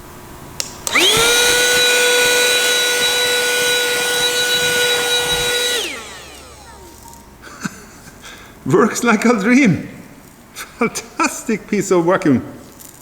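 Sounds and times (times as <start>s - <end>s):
car vacuum cleaner running: 0.8s - 8.6s.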